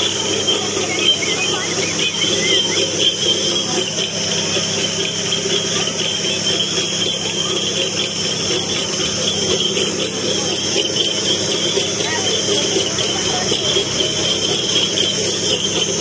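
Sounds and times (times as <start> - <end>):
bells jingling: 0.0 - 16.0
juice crushing machine humming: 0.0 - 16.0.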